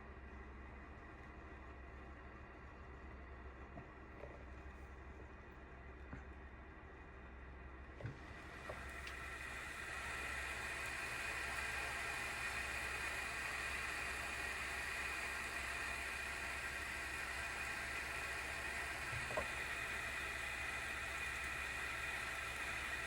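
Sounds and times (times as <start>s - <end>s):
cooling fan whirring: 0.0s - 23.0s.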